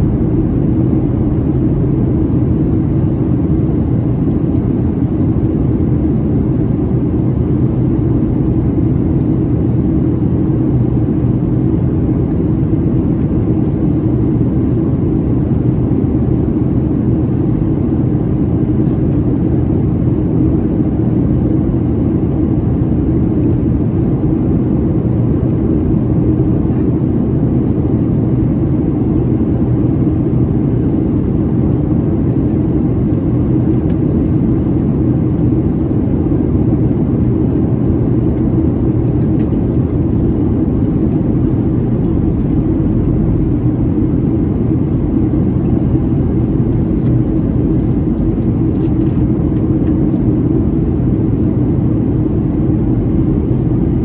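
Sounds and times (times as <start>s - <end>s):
airplane cabin roar: 0.0s - 54.0s.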